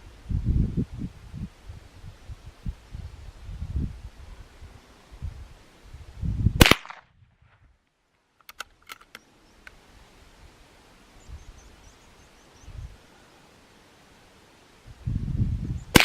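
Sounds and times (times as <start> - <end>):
rifle gunshot: 6.6 - 7.0.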